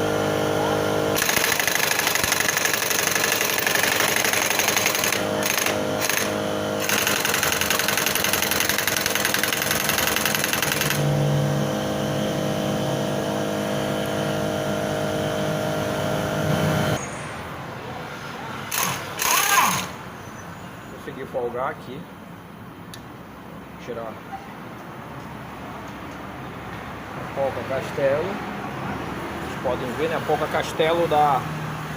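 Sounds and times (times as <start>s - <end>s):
impact wrench hammering: 1.2s - 11.0s, 18.7s - 20.0s.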